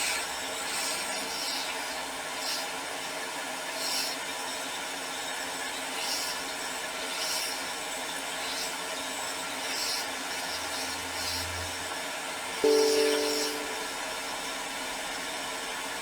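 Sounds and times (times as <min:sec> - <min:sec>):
pitched beep tone: 0:12.6 - 0:13.9.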